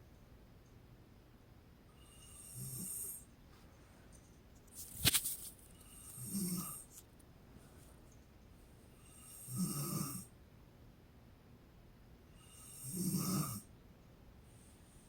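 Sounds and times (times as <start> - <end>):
woman snoring: 2.2 - 3.2, 6.1 - 6.9, 9.1 - 10.3, 12.5 - 13.7
sharp click: 4.8 - 5.6.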